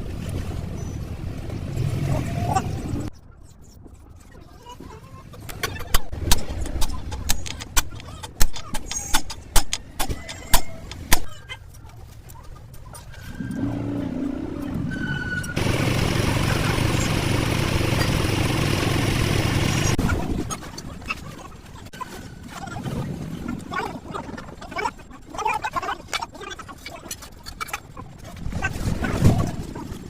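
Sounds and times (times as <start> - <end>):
mechanical running noise: 15.6 - 20.4.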